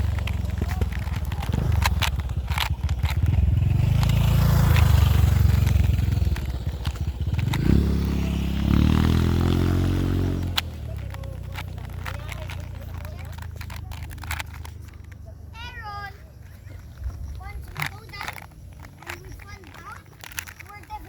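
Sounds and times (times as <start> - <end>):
engine revving: 0.0 - 15.2
clicks: 0.0 - 21.0.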